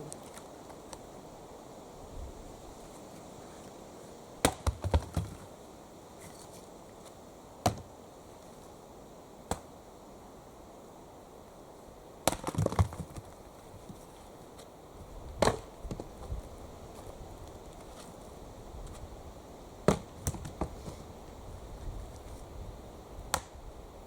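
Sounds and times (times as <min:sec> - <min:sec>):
axe chopping wood: 0:04.4 - 0:05.4, 0:07.6 - 0:07.9, 0:12.2 - 0:13.2, 0:15.4 - 0:16.0, 0:19.9 - 0:20.7, 0:23.3 - 0:23.6.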